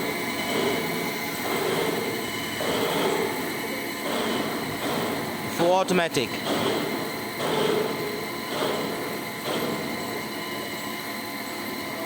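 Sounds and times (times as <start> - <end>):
drilling machine drilling steel: 0.0 - 12.0.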